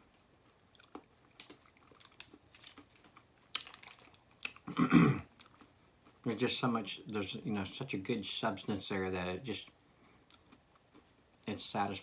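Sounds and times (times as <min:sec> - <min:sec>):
man chewing: 0:00.0 - 0:06.2, 0:10.1 - 0:11.3.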